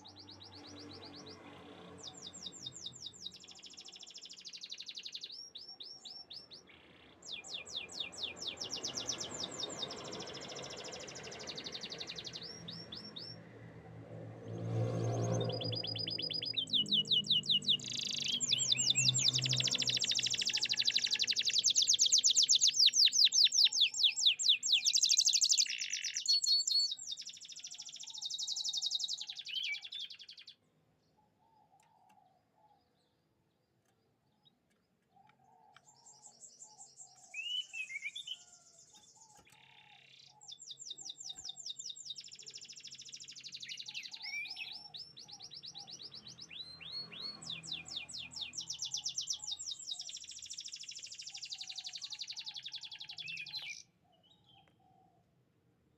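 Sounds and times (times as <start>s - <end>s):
canary singing trills: 0.0s - 13.4s, 15.2s - 30.6s, 35.2s - 54.9s.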